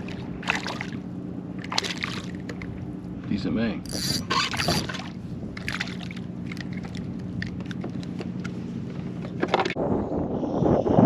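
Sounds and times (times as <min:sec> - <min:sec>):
water sloshing: 0:00.0 - 0:03.3, 0:03.9 - 0:09.8
electric motor humming: 0:03.9 - 0:04.9.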